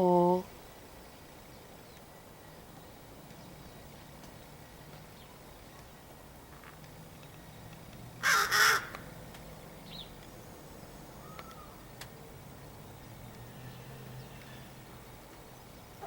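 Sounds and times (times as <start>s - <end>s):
crow cawing: 8.2s - 9.1s, 11.2s - 11.8s.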